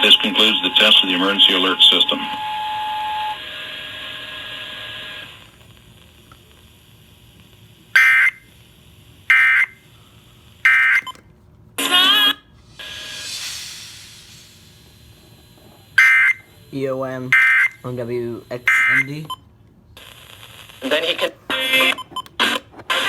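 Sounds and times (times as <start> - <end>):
brief warbling sound: 12.6 - 15.2
steady electronic tone: 12.6 - 15.6.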